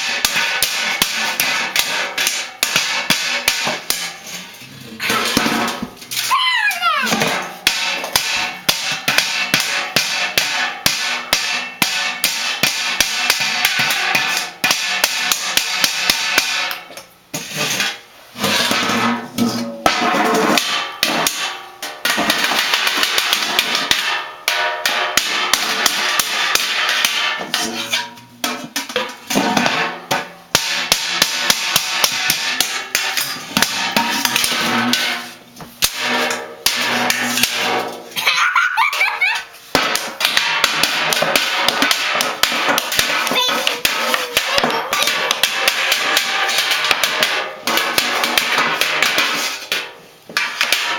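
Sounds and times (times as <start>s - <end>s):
children banging objects: 0.0s - 50.9s.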